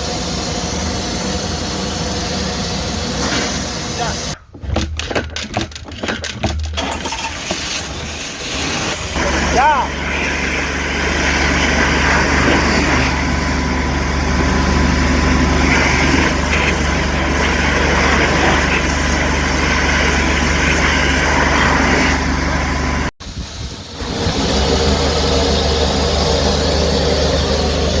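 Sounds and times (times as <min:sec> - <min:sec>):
engine running with low hum: 0:08.8 - 0:28.0.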